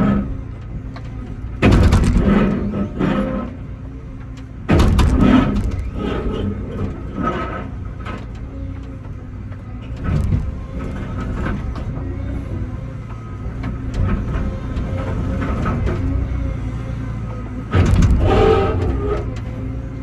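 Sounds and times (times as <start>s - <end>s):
excavator engine running: 0.0s - 20.0s.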